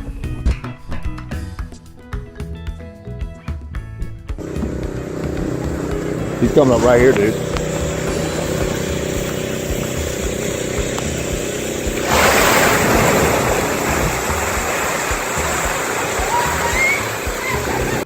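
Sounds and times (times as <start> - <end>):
motor running: 4.4 - 18.0
water splashing: 4.4 - 18.0.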